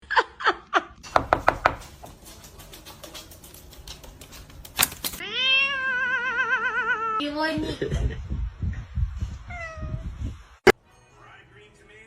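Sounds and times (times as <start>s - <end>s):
sharp knocks: 1.1s - 1.8s
cat meowing: 5.2s - 7.2s.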